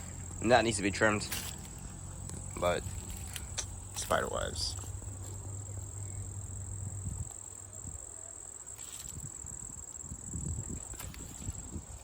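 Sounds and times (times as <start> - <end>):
crickets trilling: 0.0 - 12.0
wind rumbling on microphone: 4.7 - 12.0.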